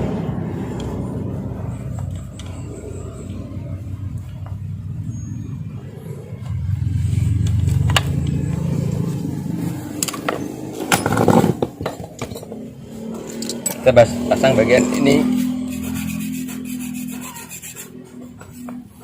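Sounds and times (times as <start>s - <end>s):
low engine rumble: 0.0s - 19.0s
small metal parts clicking: 13.2s - 13.9s.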